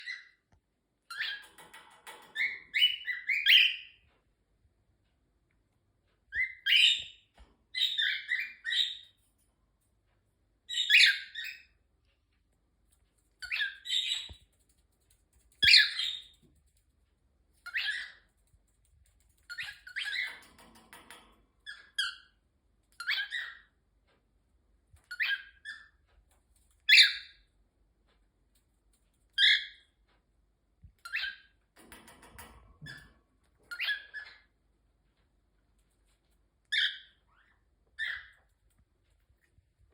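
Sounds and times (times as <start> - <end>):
cockatiel chirping: 1.1 - 1.5, 2.4 - 4.0, 6.3 - 7.2, 7.8 - 9.2, 10.7 - 11.8, 13.4 - 14.6, 15.5 - 16.4, 17.6 - 18.4, 19.4 - 20.4, 23.0 - 23.8, 25.0 - 26.0, 26.8 - 27.5, 29.4 - 29.8, 31.0 - 31.6, 33.7 - 34.5, 36.7 - 38.5.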